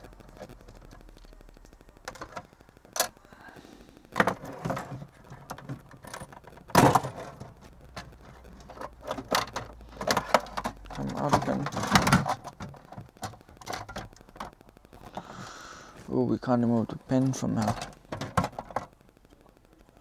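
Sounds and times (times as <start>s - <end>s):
small tools clicking and knocking: 4.2s - 15.3s, 17.2s - 18.9s.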